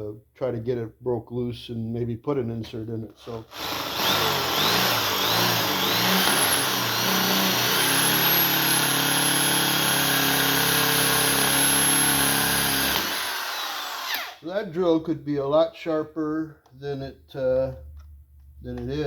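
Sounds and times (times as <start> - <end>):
power drill boring into metal: 3.2 - 14.4.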